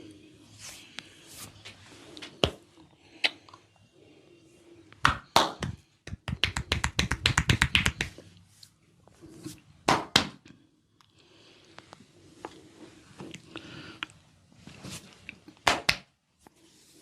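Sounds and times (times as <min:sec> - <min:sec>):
hands slapping head: 0:02.3 - 0:02.6, 0:05.0 - 0:08.2, 0:09.9 - 0:10.4, 0:15.6 - 0:16.1
fast claps and cracks: 0:05.0 - 0:08.1.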